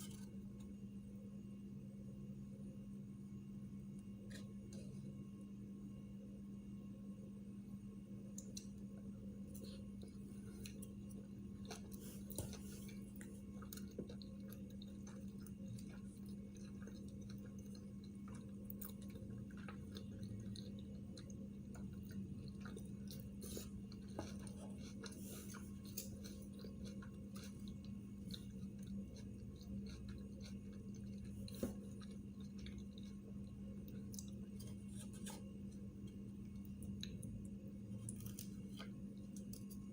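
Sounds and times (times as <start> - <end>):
steady low hum: 0.0 - 39.9
person chewing: 9.5 - 39.9.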